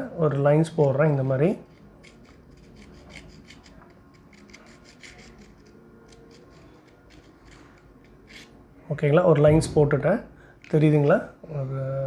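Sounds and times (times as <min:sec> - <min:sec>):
faint scraping on pencil: 0:00.7 - 0:08.7.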